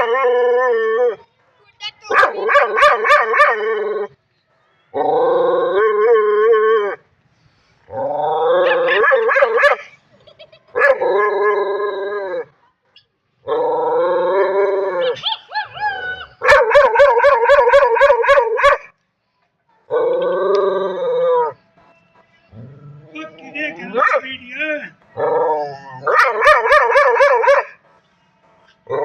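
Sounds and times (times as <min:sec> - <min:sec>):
dog yelping: 0:08.6 - 0:09.8, 0:25.2 - 0:27.7.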